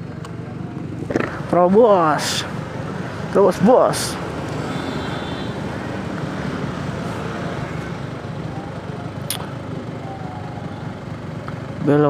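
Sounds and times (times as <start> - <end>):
two-stroke motorcycle engine running: 0.0 - 12.0
sharp click: 9.3 - 9.5.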